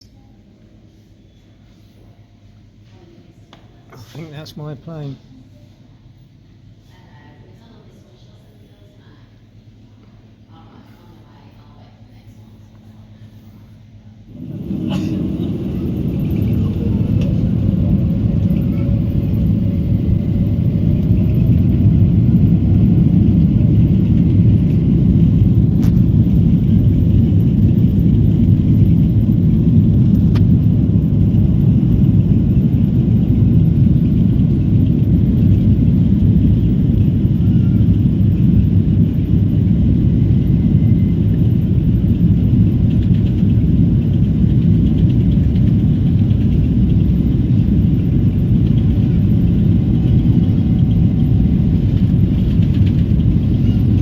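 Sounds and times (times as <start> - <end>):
airplane cabin engine rumble: 14.2 - 54.0.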